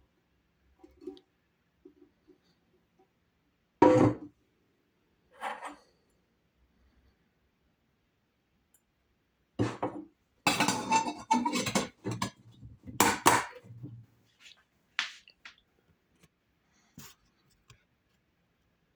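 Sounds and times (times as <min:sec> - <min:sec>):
kettle parts knocking and rattling: 0:09.6 - 0:13.6.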